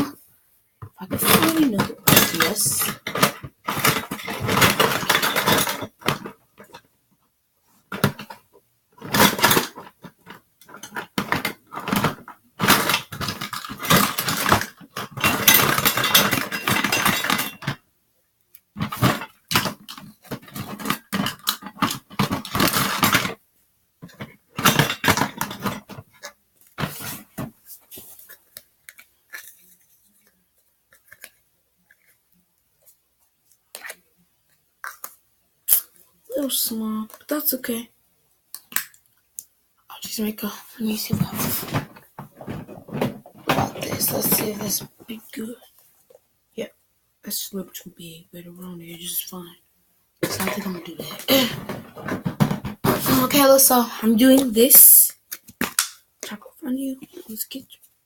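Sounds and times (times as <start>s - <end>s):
containers clattering together: 0.8s - 6.8s, 7.9s - 17.8s, 18.8s - 23.4s, 24.0s - 29.8s, 40.9s - 45.6s, 50.2s - 56.4s.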